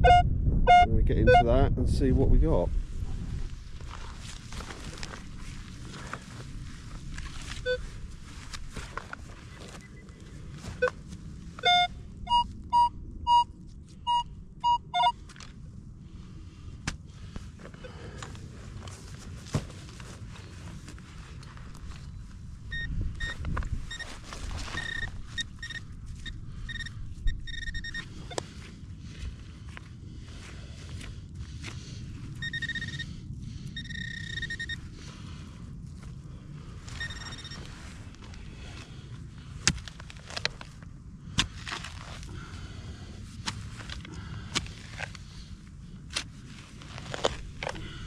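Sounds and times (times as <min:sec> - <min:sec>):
metal detector beeping: 0:00.0 - 0:01.6, 0:07.5 - 0:07.9, 0:09.5 - 0:11.0, 0:11.6 - 0:15.2, 0:22.6 - 0:28.5, 0:32.4 - 0:33.2, 0:33.8 - 0:34.9, 0:36.9 - 0:37.8
low rumble: 0:00.0 - 0:48.0
rustling handling noise: 0:03.4 - 0:11.3, 0:23.3 - 0:26.8.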